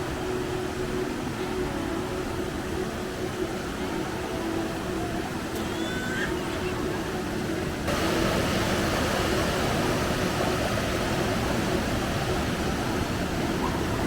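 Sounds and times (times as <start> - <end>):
waterfall rushing: 2.0 - 14.0.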